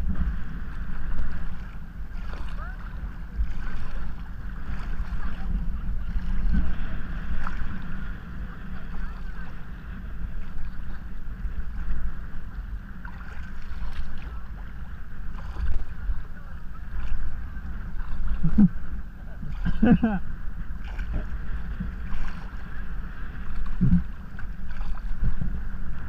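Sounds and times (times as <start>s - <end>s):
knocks and splashes: 0.0s - 7.9s, 13.0s - 16.2s, 20.8s - 22.6s, 23.4s - 25.6s
wind buffeting microphone: 0.0s - 26.0s.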